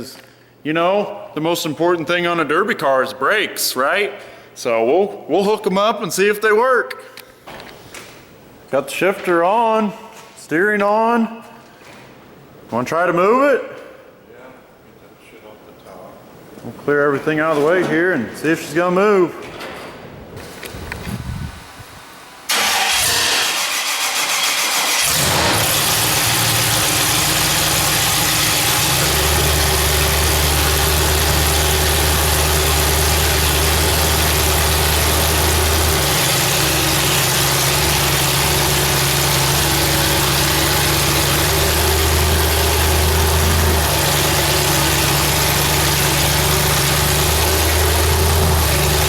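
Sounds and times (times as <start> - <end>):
car engine starting and running: 22.5 - 49.0.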